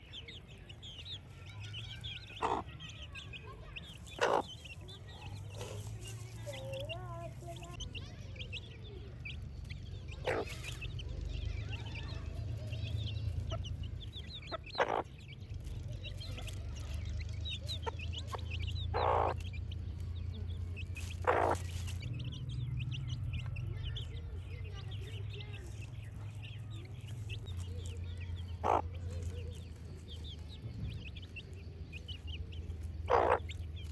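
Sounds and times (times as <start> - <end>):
baby chicks peeping: 0.0 - 33.9.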